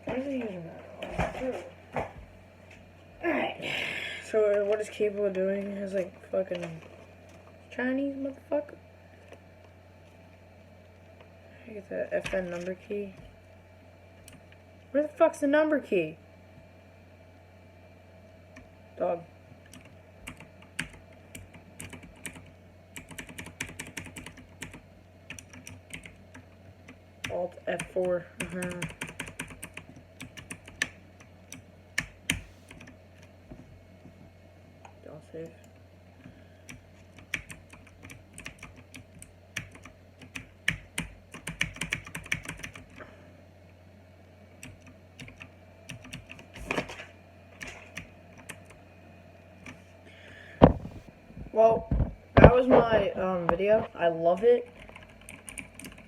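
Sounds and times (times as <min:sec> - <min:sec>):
clicky mechanical keyboard typing: 0:19.7 - 0:26.5, 0:27.2 - 0:32.9, 0:36.7 - 0:43.0, 0:44.6 - 0:46.5, 0:54.8 - 0:56.0
loud thump: 0:50.6 - 0:51.0.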